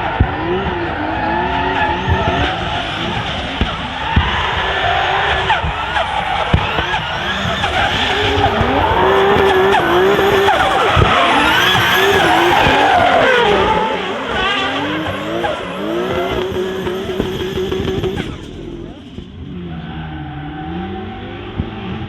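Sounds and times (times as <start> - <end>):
car engine revving: 0.0 - 22.0
tyre squeal: 5.5 - 19.0.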